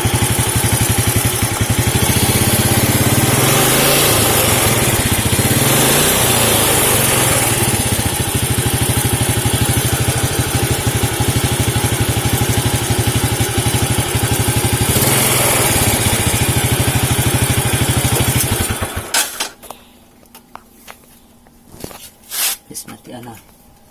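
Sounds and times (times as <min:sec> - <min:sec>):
engine revving and idling: 0:00.0 - 0:19.1
engine clicks: 0:17.2 - 0:19.7.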